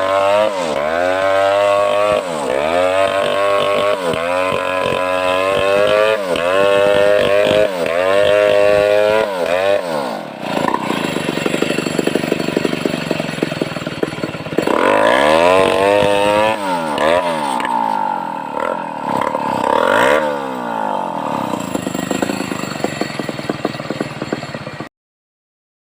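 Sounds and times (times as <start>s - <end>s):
chainsaw revving: 0.0s - 24.9s.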